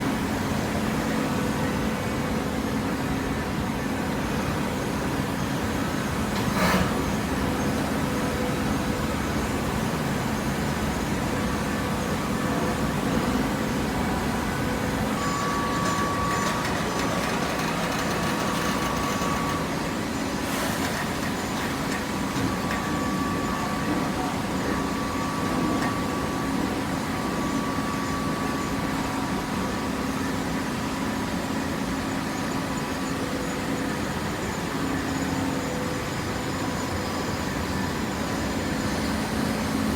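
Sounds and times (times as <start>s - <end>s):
high machine whine: 0.0s - 39.9s
baler machine hum: 5.5s - 31.0s.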